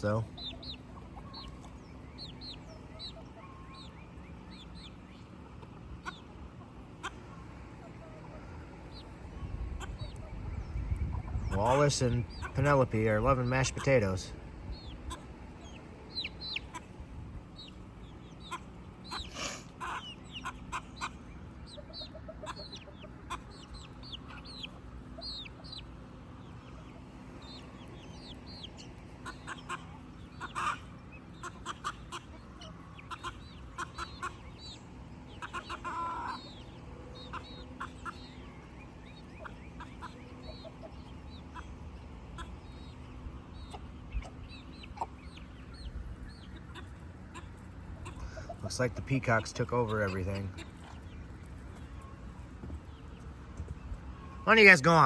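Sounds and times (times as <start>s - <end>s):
chickens clucking and cheeping: 0.0s - 55.0s.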